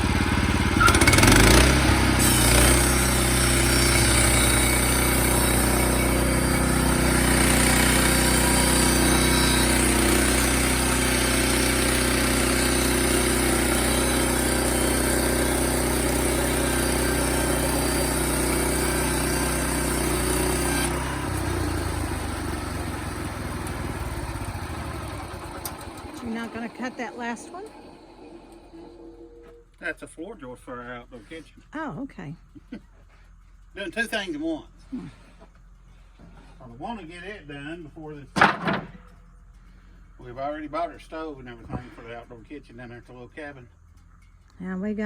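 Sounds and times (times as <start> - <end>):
sawmill engine running: 0.0 - 29.5
saw blade cutting lumber: 0.6 - 29.5.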